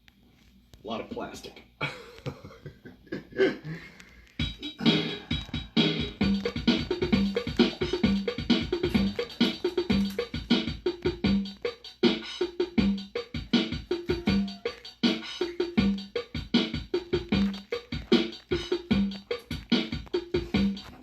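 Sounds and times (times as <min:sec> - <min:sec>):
drum machine beat: 0:04.4 - 0:21.0.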